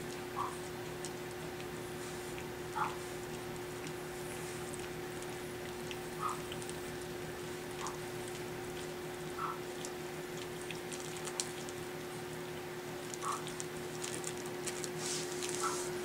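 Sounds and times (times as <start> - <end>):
steady low hum: 0.0 - 16.0
faint puppy squeaks: 6.2 - 6.4, 13.2 - 13.4, 15.6 - 16.0
puppy claws clicking on floor: 7.7 - 11.8, 13.0 - 15.9.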